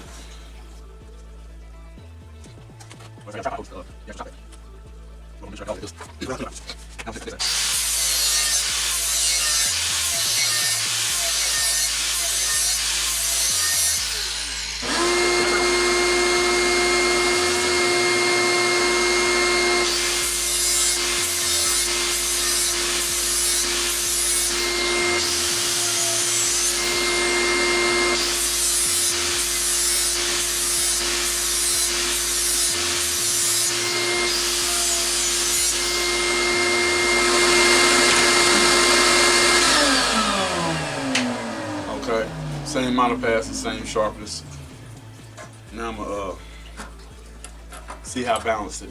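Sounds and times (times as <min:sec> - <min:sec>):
angle grinder grinding metal: 0:07.4 - 0:45.7.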